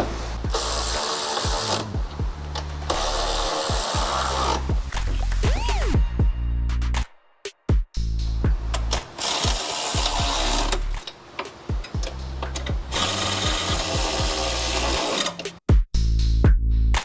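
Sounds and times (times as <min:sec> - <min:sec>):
handheld power tool running: 0:00.0 - 0:04.8, 0:08.8 - 0:15.5
music with bass and drums: 0:00.0 - 0:17.0.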